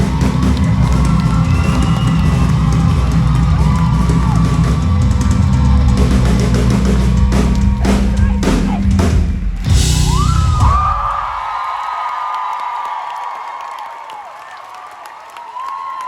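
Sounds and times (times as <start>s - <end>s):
heavy bass: 0.0s - 11.4s
drum kit: 0.0s - 11.7s.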